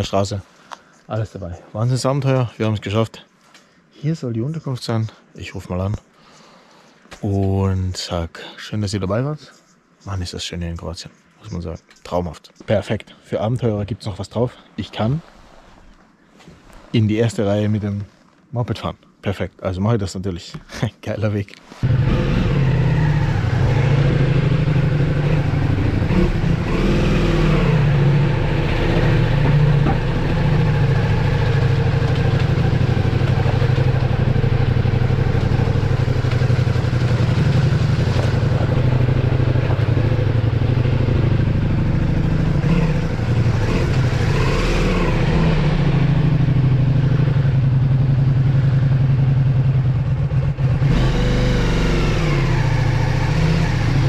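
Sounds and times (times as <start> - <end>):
motorcycle engine running: 21.8 - 54.0.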